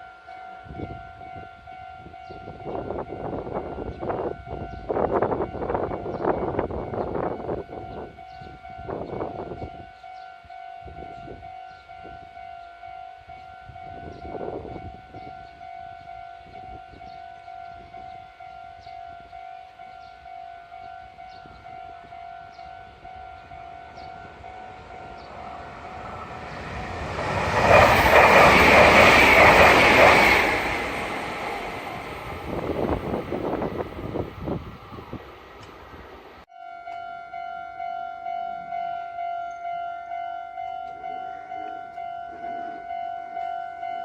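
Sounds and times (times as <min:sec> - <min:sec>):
level crossing warning bell: 0:00.0 - 0:33.8, 0:36.5 - 0:44.0
electric train rushing past: 0:22.8 - 0:36.5.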